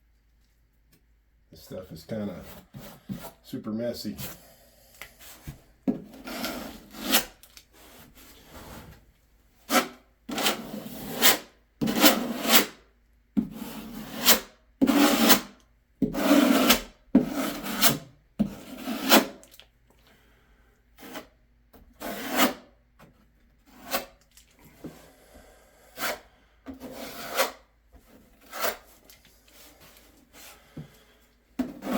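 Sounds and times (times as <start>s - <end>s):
tool scraping sealant: 5.3s - 9.0s, 9.7s - 12.8s, 13.4s - 19.6s, 23.7s - 27.7s, 28.3s - 30.9s, 31.6s - 31.9s.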